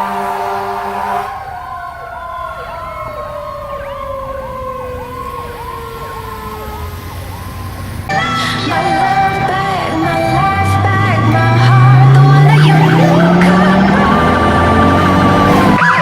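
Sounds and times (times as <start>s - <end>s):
siren winding down: 0.2s - 16.0s
electronic siren yelping: 0.7s - 16.0s
music: 8.1s - 16.0s.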